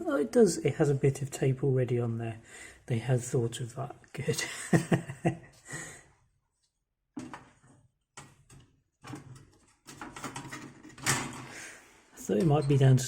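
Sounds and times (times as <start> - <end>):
metal and plastic parts handled: 7.2 - 11.6
scraping and rustling: 8.4 - 12.1.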